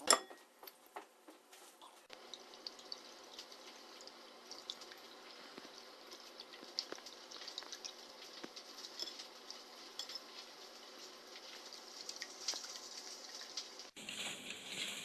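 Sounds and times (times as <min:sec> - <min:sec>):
utensils clinking against dishes: 0:00.0 - 0:00.5
faint steady hiss: 0:00.0 - 0:15.0
small scattered ticks: 0:02.1 - 0:15.0.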